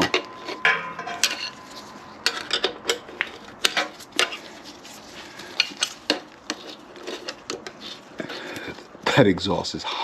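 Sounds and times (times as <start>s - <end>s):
tools and metal parts clinking: 0.0s - 4.4s.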